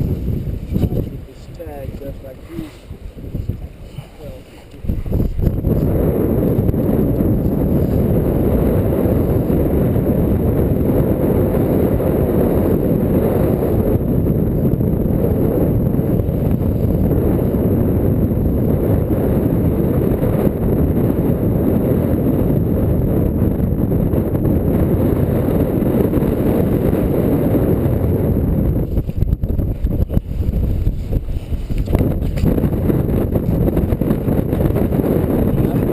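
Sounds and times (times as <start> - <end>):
wind buffeting microphone: 0.0 - 35.9.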